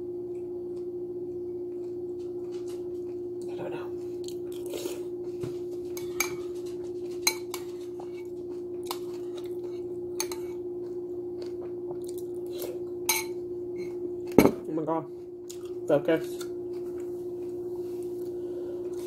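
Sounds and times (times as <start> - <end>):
steady hum: 0.0 - 19.0
spoon clinking against bowl: 13.1 - 13.4.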